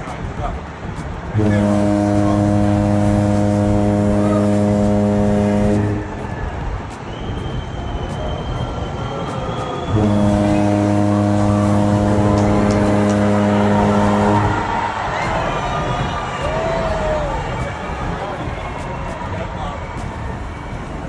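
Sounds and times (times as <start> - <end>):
ship's horn blasts: 1.4 - 6.3, 9.9 - 18.9.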